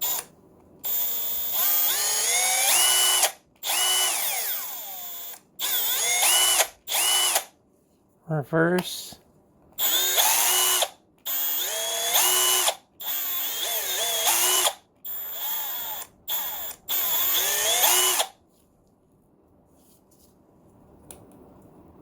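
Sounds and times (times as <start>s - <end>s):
impact wrench motor whine: 0.9s - 7.5s, 9.8s - 18.3s.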